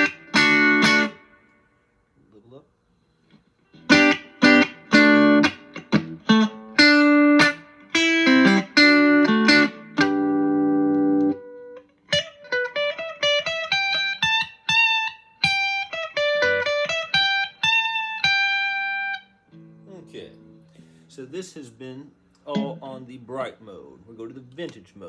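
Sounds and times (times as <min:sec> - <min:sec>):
electric guitar chords: 0:00.0 - 0:01.6, 0:03.7 - 0:21.1
electric guitar single notes: 0:00.0 - 0:01.6, 0:03.7 - 0:21.0, 0:22.4 - 0:23.0.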